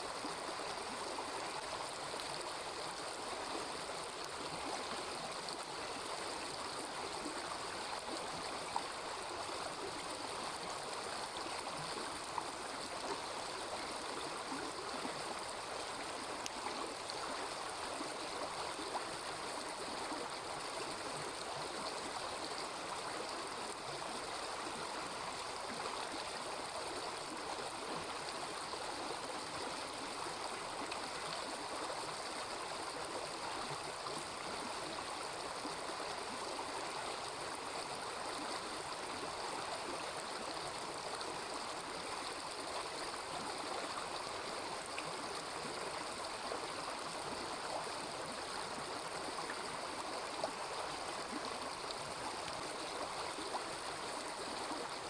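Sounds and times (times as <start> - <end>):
river water flowing: 0.0 - 55.0.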